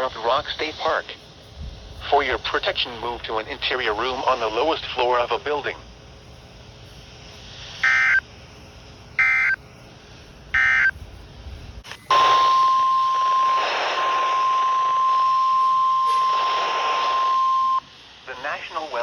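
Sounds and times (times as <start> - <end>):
radio hiss: 0.0 - 19.0
data tone bursts: 7.8 - 8.2, 9.2 - 9.6, 10.6 - 11.0, 17.1 - 17.8
single-pitch alarm tone: 7.8 - 8.2, 9.2 - 9.6, 10.6 - 11.0, 12.0 - 17.8.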